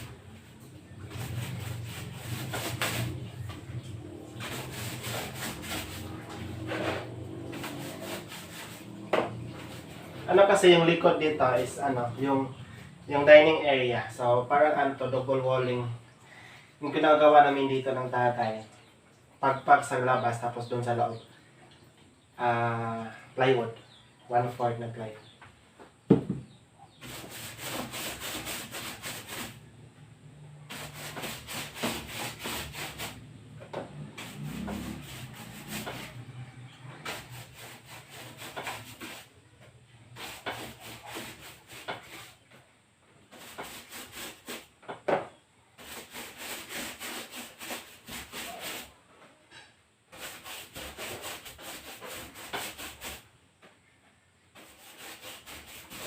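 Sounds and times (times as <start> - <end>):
paintbrush scrubbing on wood: 0.0 - 14.3, 26.9 - 29.7, 30.6 - 39.4, 40.1 - 42.5, 43.3 - 44.7, 45.8 - 49.0, 50.1 - 53.3, 54.5 - 56.0.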